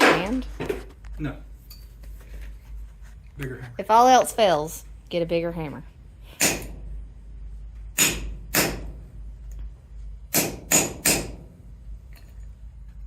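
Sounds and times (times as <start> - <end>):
hammer striking metal punch: 6.4 - 6.9, 8.0 - 9.1, 10.3 - 11.6.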